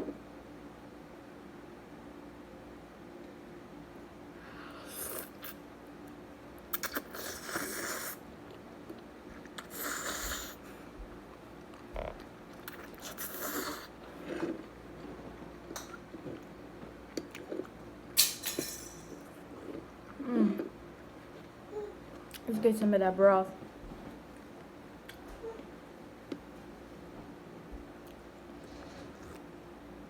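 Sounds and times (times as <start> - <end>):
person chewing noodles: 4.8 - 5.6, 6.7 - 17.8.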